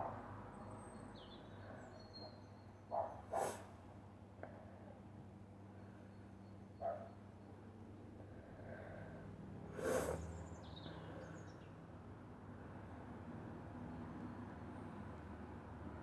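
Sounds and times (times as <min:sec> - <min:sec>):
catching breath: 0:08.5 - 0:10.2.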